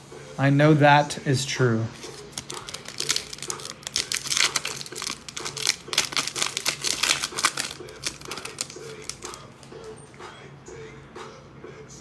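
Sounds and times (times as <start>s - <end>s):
foil wrappers crinkling: 1.9s - 9.7s
cards being handled: 2.0s - 9.8s.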